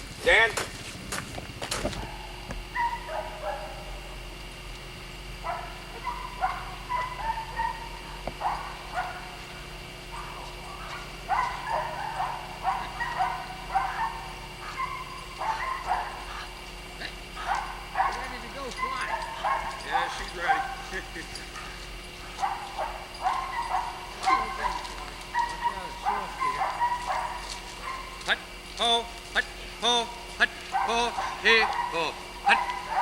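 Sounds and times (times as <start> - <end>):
dog whining and yipping: 5.5 - 8.0, 10.2 - 16.5, 18.6 - 19.8.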